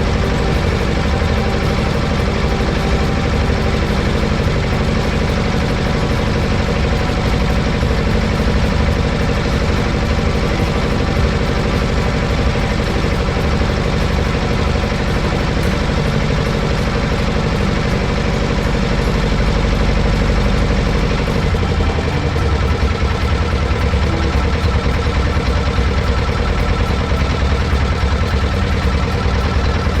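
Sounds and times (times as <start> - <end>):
engine running with low rumble: 0.0 - 30.0.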